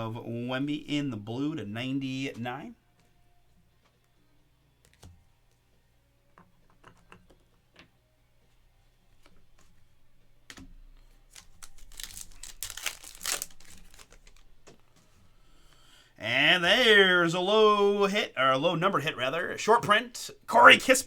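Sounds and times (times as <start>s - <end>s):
cards clicking and tapping: 4.8s - 5.6s, 10.4s - 14.8s
foil wrappers crinkling: 11.2s - 14.6s.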